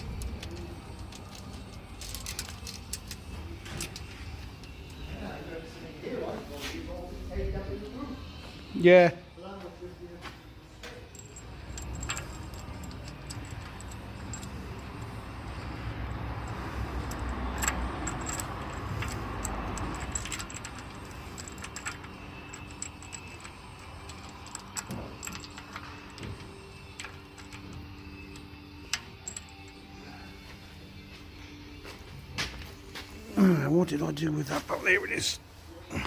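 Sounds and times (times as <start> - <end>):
metal tools clinking: 0.0 - 5.1, 10.9 - 30.4.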